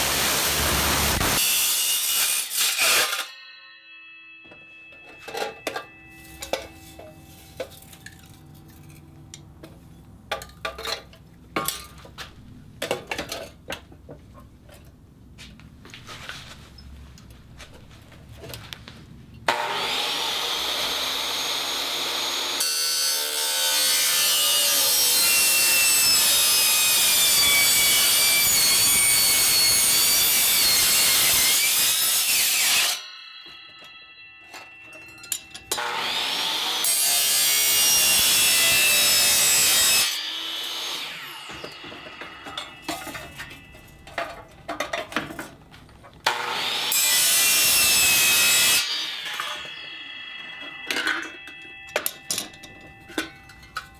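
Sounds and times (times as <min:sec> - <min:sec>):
saw cutting through metal: 0:00.0 - 0:03.4, 0:19.5 - 0:44.0, 0:46.2 - 0:51.9
metal tumbler being handled: 0:04.4 - 0:12.2, 0:50.5 - 0:53.9.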